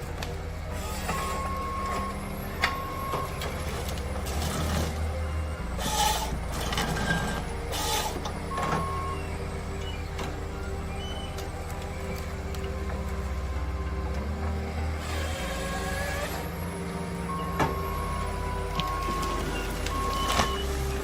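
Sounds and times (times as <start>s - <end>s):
machinery humming: 0.0s - 21.0s
short beeps: 17.3s - 21.0s.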